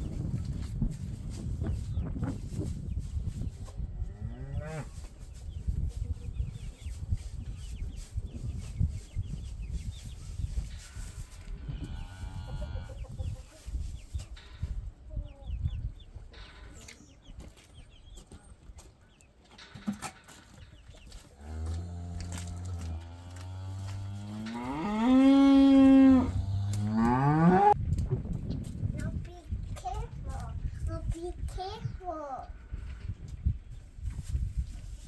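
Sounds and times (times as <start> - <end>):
cow mooing: 21.4 - 27.8.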